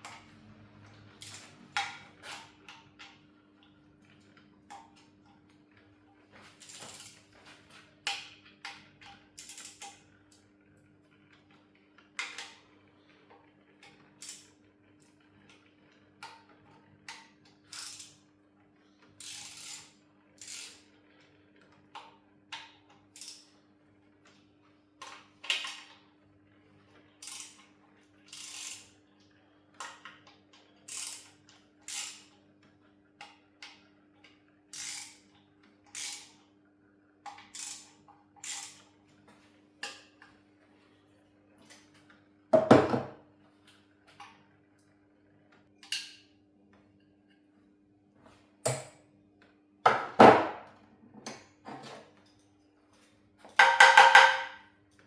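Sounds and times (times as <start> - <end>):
ratchet wrench clicking: 1.2 - 1.5, 9.4 - 10.0, 17.7 - 18.2, 19.2 - 20.9, 23.2 - 23.5, 27.2 - 27.6, 28.3 - 28.9, 30.9 - 31.3, 31.9 - 32.3, 34.7 - 35.2, 35.9 - 36.4, 37.5 - 38.8.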